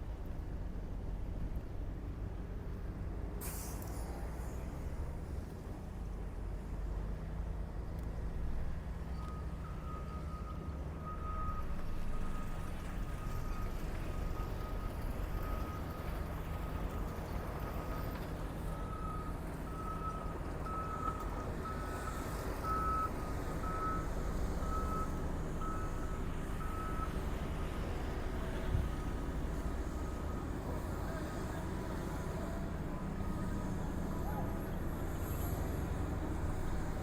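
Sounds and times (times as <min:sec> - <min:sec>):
diesel engine rumble: 0:00.0 - 0:37.0
reversing alarm beeping: 0:18.7 - 0:27.2.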